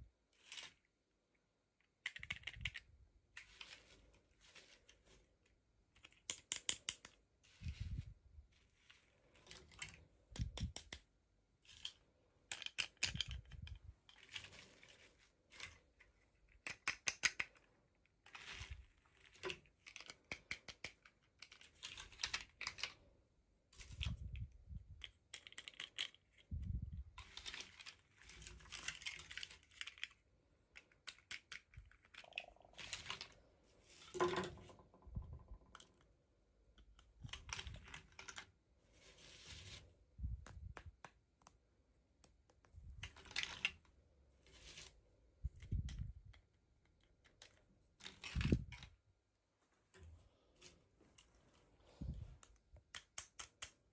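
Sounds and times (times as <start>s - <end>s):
plastic toys clicking and tapping: 1.8s - 3.7s, 5.9s - 7.3s, 9.4s - 11.1s, 11.7s - 23.1s, 24.0s - 33.4s, 34.1s - 38.6s, 40.3s - 43.9s, 45.5s - 49.0s, 52.4s - 53.9s.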